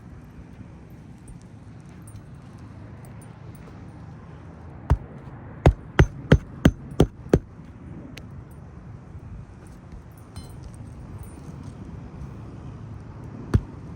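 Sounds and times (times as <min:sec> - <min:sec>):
hammer blows on roofing nail: 0:04.9 - 0:05.1, 0:05.7 - 0:07.5, 0:13.6 - 0:13.9.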